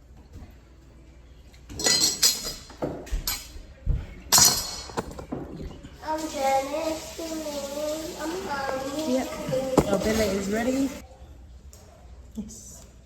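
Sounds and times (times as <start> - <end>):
dishes clinking and clattering: 1.5 - 6.5, 7.6 - 11.0.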